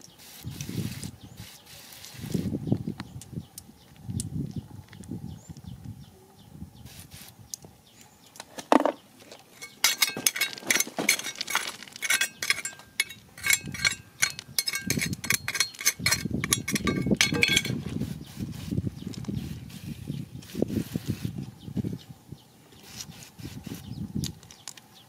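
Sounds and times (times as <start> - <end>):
rustling and handling noise: 8.0 - 21.5
hard objects clinking together: 8.6 - 17.8.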